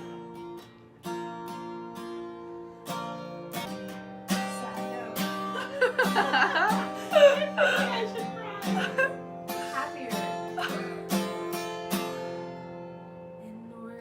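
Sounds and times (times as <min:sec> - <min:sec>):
acoustic guitar strummed: 0:00.0 - 0:14.0
person's voice: 0:07.0 - 0:11.1.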